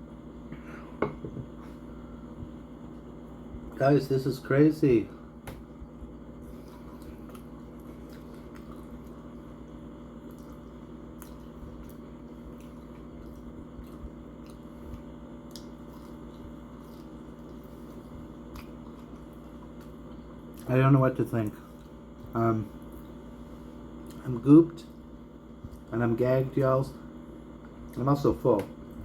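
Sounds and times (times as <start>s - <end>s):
steady low hum: 0.0s - 29.0s
wet chewing mouth sounds: 6.4s - 9.4s, 10.2s - 20.7s.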